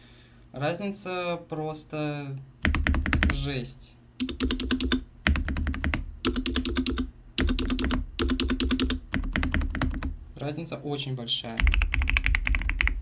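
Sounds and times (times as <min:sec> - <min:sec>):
mechanical keyboard typing: 0:02.6 - 0:03.5, 0:04.2 - 0:10.1, 0:11.6 - 0:13.0.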